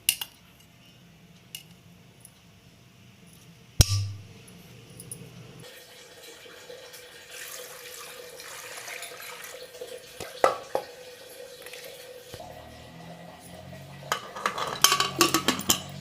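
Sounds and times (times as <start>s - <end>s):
tap water running: 5.6s - 16.0s.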